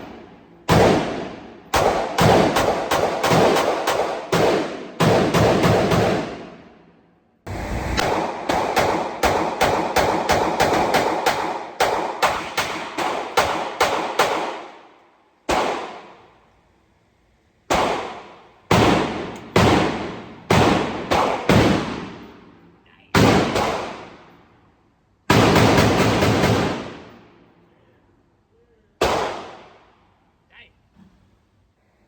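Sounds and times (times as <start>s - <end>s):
gunshots echoing: 0.0s - 6.8s, 8.0s - 14.9s, 15.5s - 16.3s, 17.7s - 22.5s, 23.1s - 24.4s, 25.3s - 27.4s, 29.0s - 29.9s.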